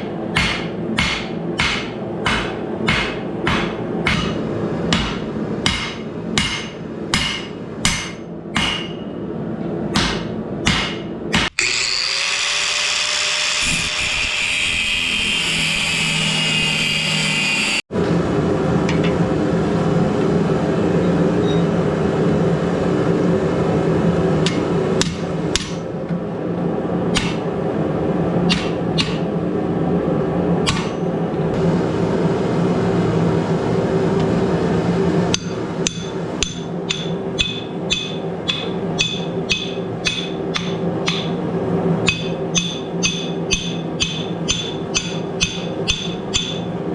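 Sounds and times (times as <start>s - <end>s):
hammer ringing on steel anvil: 0.4s - 9.2s, 35.3s - 41.4s, 42.0s - 46.7s.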